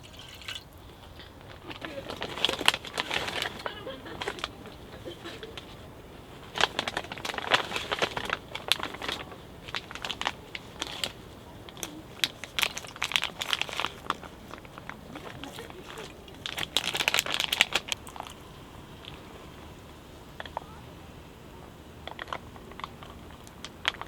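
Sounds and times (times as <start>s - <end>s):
crinkling and crackling: 0.0s - 20.9s, 22.0s - 24.0s.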